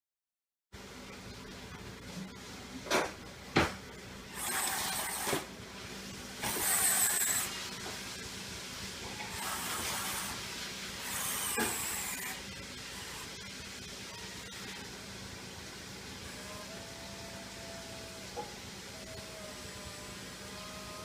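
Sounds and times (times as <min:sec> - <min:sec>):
small electric motors whining: 0:04.3 - 0:05.5, 0:06.4 - 0:07.6, 0:09.2 - 0:10.4, 0:11.0 - 0:15.0, 0:16.2 - 0:21.0.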